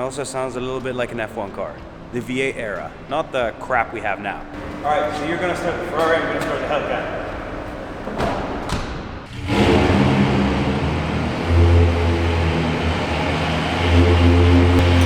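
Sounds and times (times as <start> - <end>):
car engines starting and idling: 4.6 - 8.0, 9.2 - 15.0.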